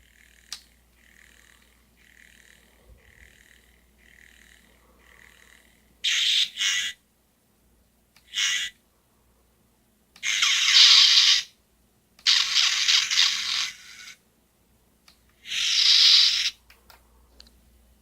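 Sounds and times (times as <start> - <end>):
high-pitched hissy lightsaber effects: 10.2 - 11.5, 15.4 - 16.6.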